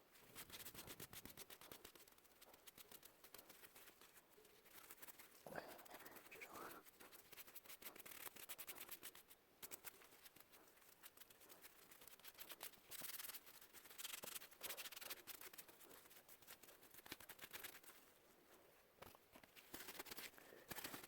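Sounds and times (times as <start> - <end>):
scrubbing and scratching: 0.2 - 21.0.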